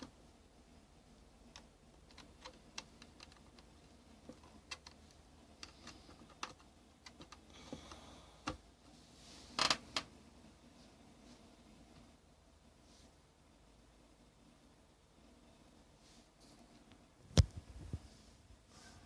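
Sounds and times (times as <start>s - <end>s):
small plastic parts clicking: 1.4s - 8.6s.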